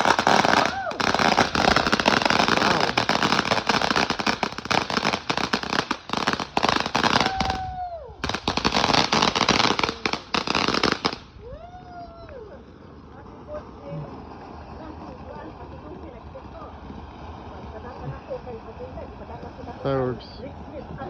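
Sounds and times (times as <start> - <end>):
firecrackers banging rapidly: 0.0 - 7.6, 8.2 - 11.3.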